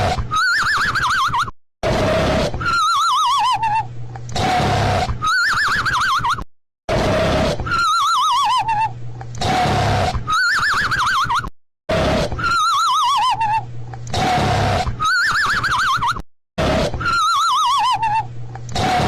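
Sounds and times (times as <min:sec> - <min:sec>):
cartoon snoring: 0:00.0 - 0:00.2, 0:01.8 - 0:02.8, 0:04.4 - 0:05.2, 0:06.9 - 0:07.8, 0:09.4 - 0:10.4, 0:11.9 - 0:12.6, 0:14.1 - 0:15.0, 0:16.6 - 0:17.4, 0:18.7 - 0:19.0.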